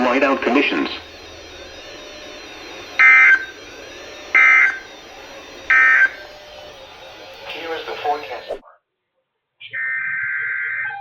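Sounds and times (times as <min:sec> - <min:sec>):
short digital data bursts: 0:00.0 - 0:08.6
faint radio hiss: 0:07.4 - 0:08.6.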